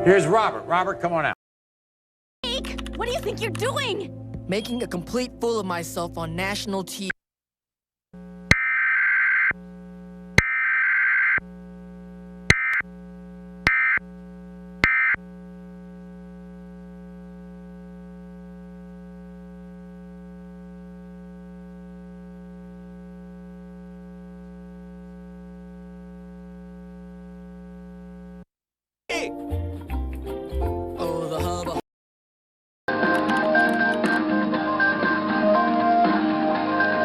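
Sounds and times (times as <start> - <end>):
steady electronic buzzing tone: 8.2 - 28.5.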